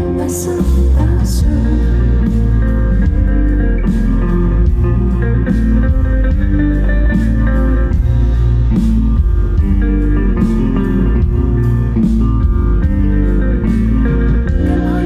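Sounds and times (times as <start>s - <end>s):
bass: 0.0s - 15.0s
guitar: 0.0s - 15.0s.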